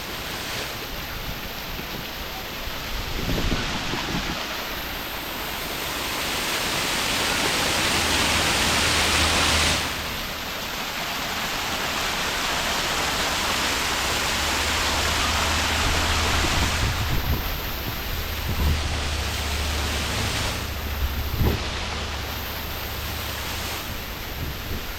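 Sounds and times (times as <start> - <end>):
waterfall rushing: 0.0 - 24.9.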